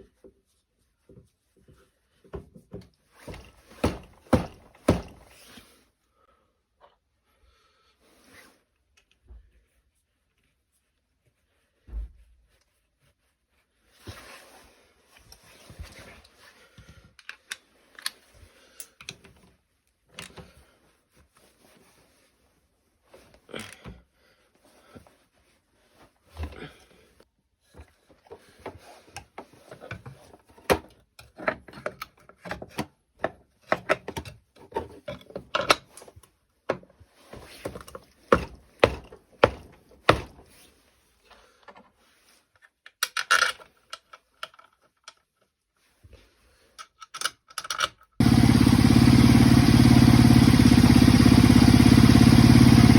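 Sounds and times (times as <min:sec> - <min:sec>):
clicks and scrapes of hand work: 0:27.7 - 0:39.0, 0:40.5 - 0:48.2
engine running loudly: 0:48.2 - 0:52.9.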